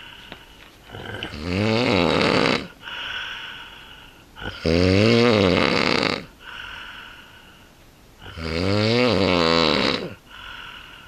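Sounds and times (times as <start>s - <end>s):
breathy breath: 0.0s - 1.2s, 2.8s - 4.3s, 6.4s - 7.8s, 10.2s - 11.0s
person snoring: 0.9s - 3.5s, 4.4s - 7.2s, 8.2s - 11.0s.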